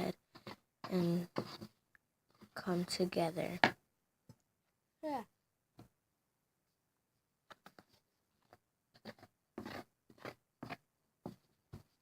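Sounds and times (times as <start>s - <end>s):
spoon stirring thick mixture: 0.0s - 3.0s, 7.7s - 12.0s.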